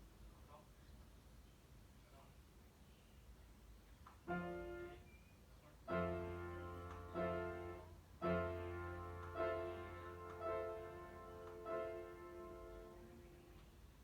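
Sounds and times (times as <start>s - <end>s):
soft piano music: 4.3s - 5.0s, 5.8s - 13.8s.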